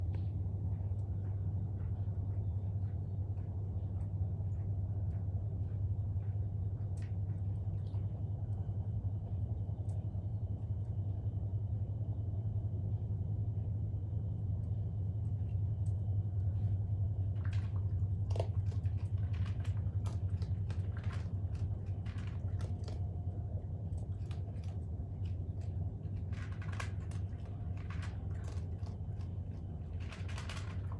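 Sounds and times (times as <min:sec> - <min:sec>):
steady low hum: 0:00.0 - 0:30.9
animal lapping and chewing clicks: 0:01.8 - 0:10.0, 0:14.6 - 0:30.9.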